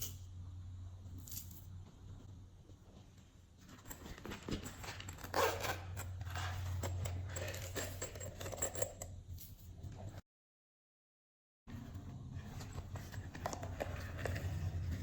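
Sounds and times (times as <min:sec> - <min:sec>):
steady low hum: 0:00.0 - 0:04.1.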